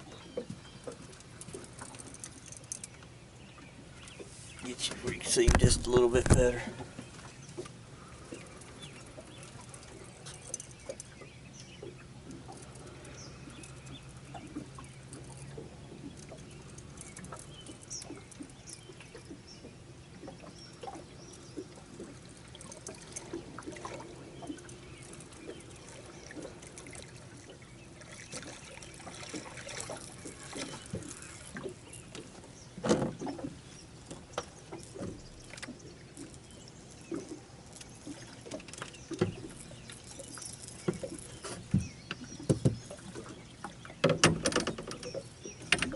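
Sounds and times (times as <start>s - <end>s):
water trickling and splashing: 0.0s - 45.9s
small clicks and knocks: 37.1s - 45.9s.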